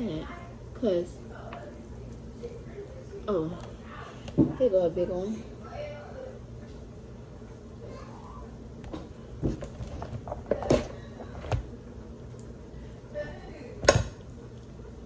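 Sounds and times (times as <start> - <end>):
kitchen knocks and clicks: 13.8 - 14.2.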